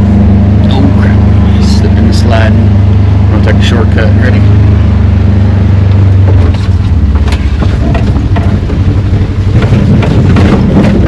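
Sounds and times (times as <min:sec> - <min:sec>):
small vehicle engine running: 0:00.0 - 0:11.0
knocks and rattles: 0:05.9 - 0:11.0.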